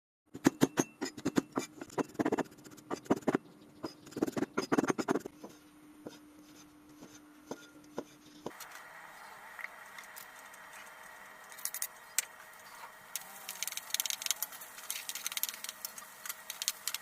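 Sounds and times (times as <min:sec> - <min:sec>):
faint steady hum: 0:01.4 - 0:17.0
sharp clicks and knocks: 0:13.5 - 0:17.0.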